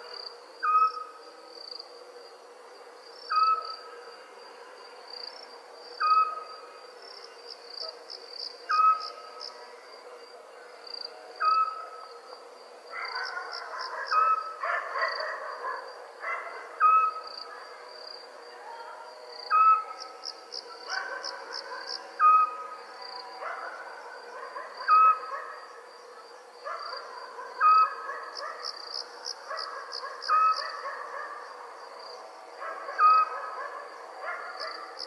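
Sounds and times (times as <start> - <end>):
insect trill: 0.0 - 35.0
night animal whistled call: 0.1 - 1.3, 3.3 - 4.0, 6.0 - 6.7, 8.6 - 9.6, 11.4 - 12.2, 12.9 - 17.8, 18.5 - 25.8, 26.7 - 31.4, 32.6 - 35.0.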